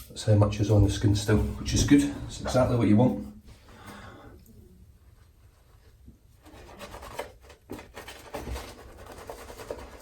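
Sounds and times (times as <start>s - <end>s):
shaving brush scrubbing skin: 8.4s - 10.0s.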